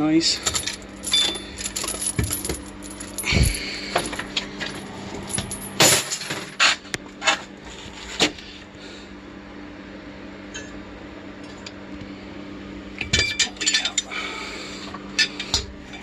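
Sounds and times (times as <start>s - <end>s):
steady low hum: 0.0s - 16.0s
metal and glass items clinking: 0.4s - 6.6s, 13.1s - 14.1s.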